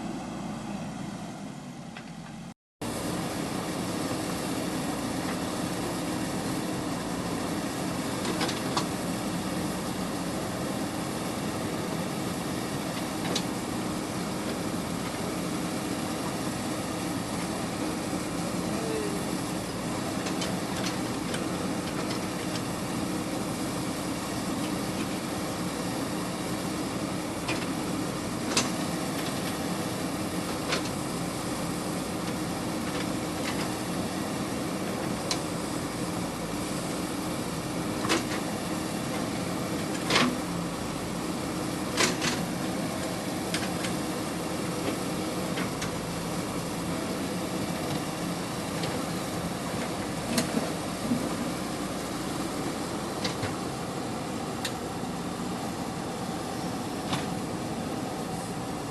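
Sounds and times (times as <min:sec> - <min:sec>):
diesel engine running: 0:00.0 - 0:58.9.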